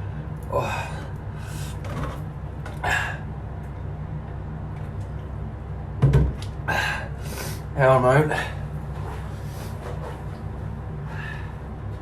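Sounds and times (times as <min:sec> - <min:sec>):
steady low hum: 0:00.0 - 0:12.0
man breathing out hard: 0:00.5 - 0:01.8, 0:02.8 - 0:03.3, 0:06.7 - 0:07.7, 0:11.0 - 0:11.6.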